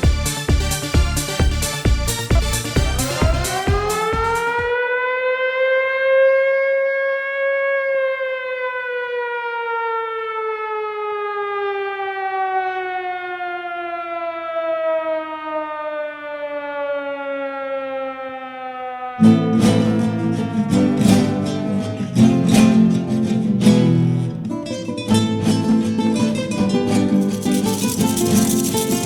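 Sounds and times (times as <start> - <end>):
electronic dance music: 0.0 - 4.7
siren wailing: 2.8 - 19.4.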